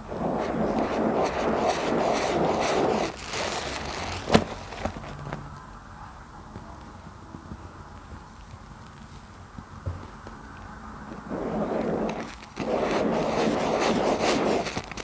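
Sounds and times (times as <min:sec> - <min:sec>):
soap bar squishing in foam: 0:00.0 - 0:05.2, 0:11.2 - 0:15.0
foam crackling: 0:00.0 - 0:05.5, 0:11.0 - 0:15.0.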